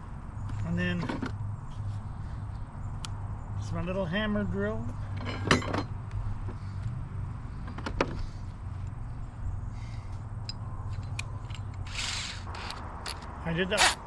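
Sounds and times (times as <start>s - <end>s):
drill clicks: 11.0s - 14.0s
hammer drill motor running: 11.8s - 13.2s, 13.8s - 14.0s.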